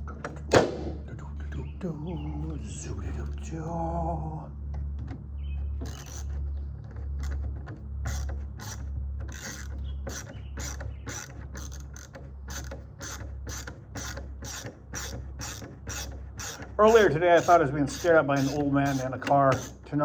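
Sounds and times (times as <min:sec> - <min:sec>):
steady low rumble: 0:00.0 - 0:20.0
hand tool scraping a lock: 0:05.7 - 0:20.0.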